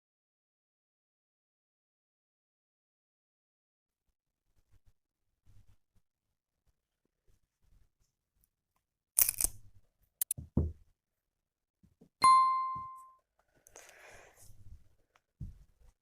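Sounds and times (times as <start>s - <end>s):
sharp ringing ding: 12.2s - 13.2s.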